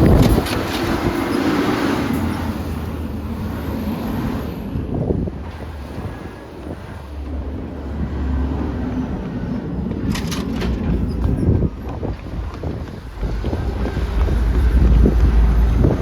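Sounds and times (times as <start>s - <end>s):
truck diesel engine rumbling: 0.0s - 16.0s
wind buffeting microphone: 0.0s - 16.0s.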